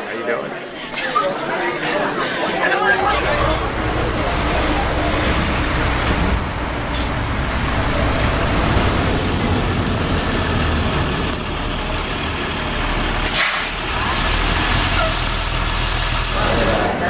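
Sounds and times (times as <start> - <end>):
bus engine running: 1.7 - 17.0
air brake hiss: 13.2 - 13.9.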